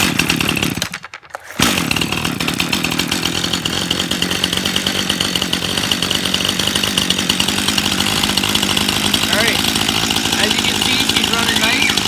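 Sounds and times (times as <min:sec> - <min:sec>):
chainsaw engine running: 0:00.0 - 0:12.0.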